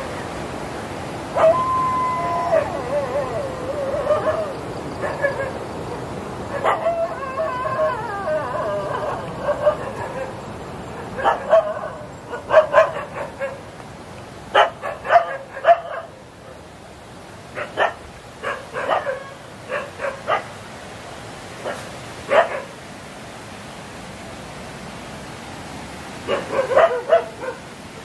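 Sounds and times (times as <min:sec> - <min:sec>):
dog barking: 0:04.1 - 0:05.5, 0:06.5 - 0:07.0, 0:08.9 - 0:10.3, 0:11.1 - 0:13.6, 0:14.5 - 0:16.1, 0:17.6 - 0:20.5, 0:21.6 - 0:22.7, 0:26.3 - 0:27.6.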